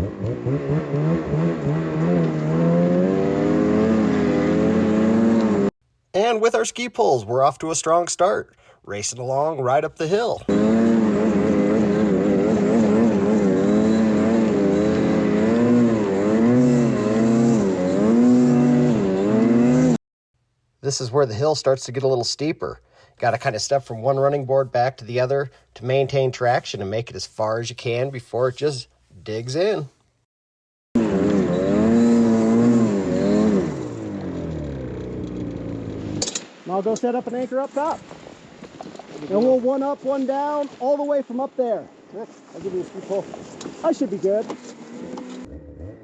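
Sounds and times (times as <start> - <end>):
snowmobile engine revving: 0.0 - 5.7, 10.0 - 20.0, 31.0 - 38.0, 42.6 - 46.0.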